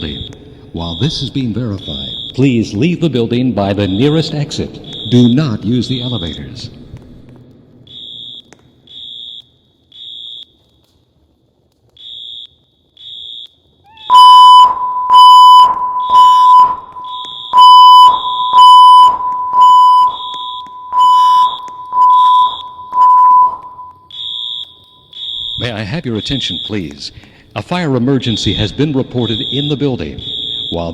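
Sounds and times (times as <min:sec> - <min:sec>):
high-pitched fire alarm beeps: 0:00.0 - 0:02.8, 0:03.7 - 0:06.5, 0:07.8 - 0:10.8, 0:12.0 - 0:26.9, 0:28.2 - 0:30.9
loud low buzzy alarm tone: 0:14.1 - 0:25.7, 0:29.2 - 0:30.9.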